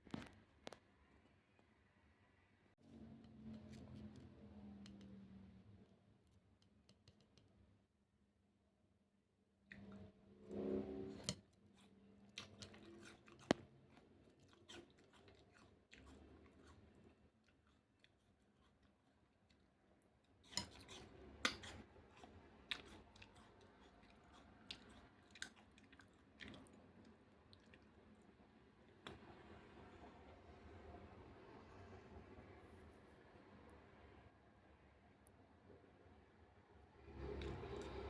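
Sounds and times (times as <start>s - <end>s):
chewing crunchy food: 11.7s - 28.4s, 37.2s - 38.0s.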